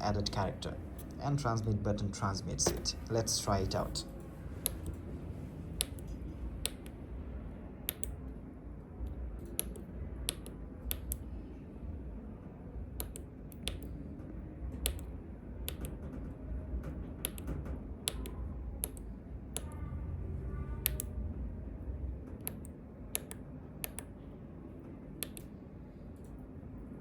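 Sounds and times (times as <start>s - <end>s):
low background rumble: 0.0s - 27.0s.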